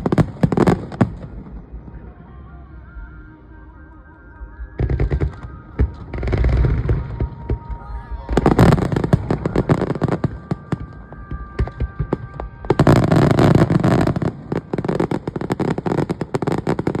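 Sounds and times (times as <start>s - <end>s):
fireworks crackling and popping: 0.0s - 1.9s, 4.6s - 17.0s
high whistle: 3.0s - 16.5s.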